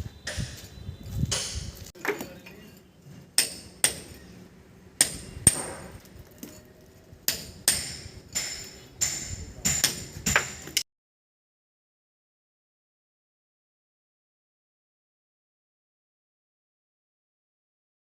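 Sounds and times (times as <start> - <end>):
hammer striking metal: 0.2 - 0.7, 3.4 - 4.4, 5.0 - 6.6, 7.2 - 10.8.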